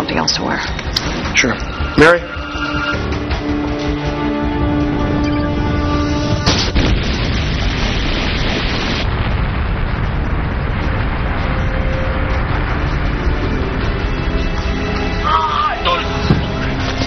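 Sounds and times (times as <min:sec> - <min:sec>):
film score held tones: 0:00.0 - 0:17.0
loud explosion boom and rumble: 0:06.2 - 0:15.2.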